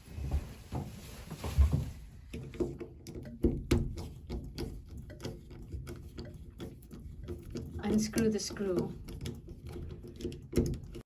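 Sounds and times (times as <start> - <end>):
faucet knob knocking and clicking: 2.3 - 11.0.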